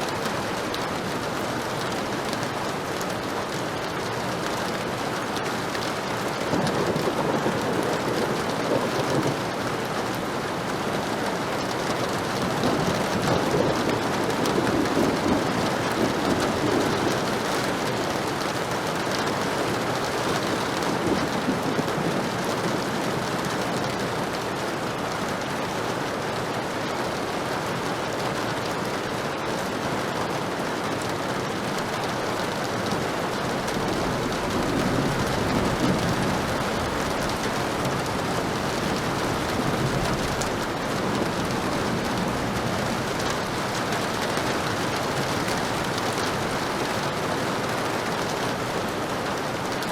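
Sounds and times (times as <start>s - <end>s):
heavy rain: 0.0s - 49.9s
low thunder rumbling: 6.4s - 18.9s, 32.2s - 47.6s.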